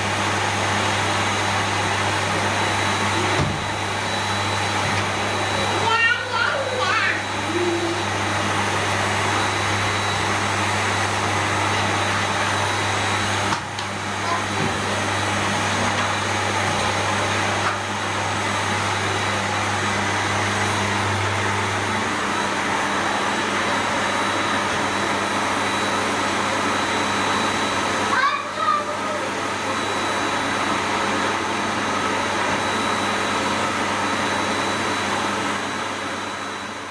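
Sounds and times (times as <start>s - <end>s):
vacuum cleaner low hum: 0.0s - 36.9s
vacuum cleaner rush of air: 0.0s - 36.9s.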